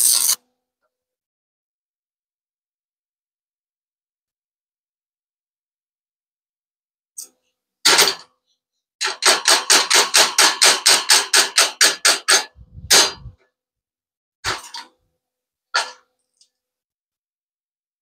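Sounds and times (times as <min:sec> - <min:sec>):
hammer striking metal: 0:09.0 - 0:13.3.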